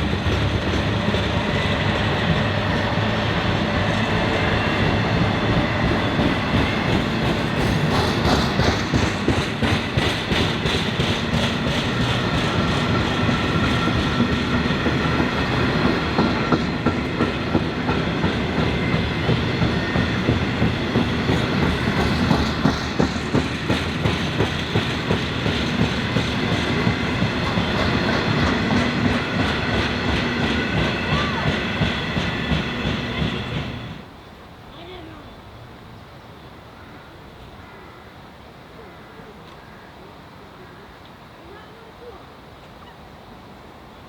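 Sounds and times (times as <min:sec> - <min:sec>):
wheels clicking over rail joints: 0:00.0 - 0:34.1
train passing at speed: 0:00.0 - 0:39.4.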